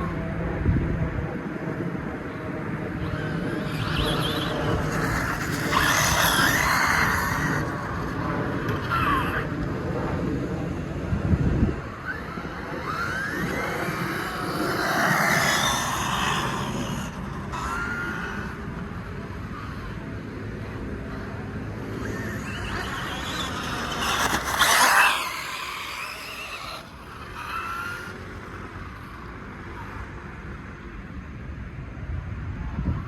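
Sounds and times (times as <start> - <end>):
tyres on pavement: 1.2 - 30.5
electric motor whine: 2.2 - 9.7, 11.2 - 29.3.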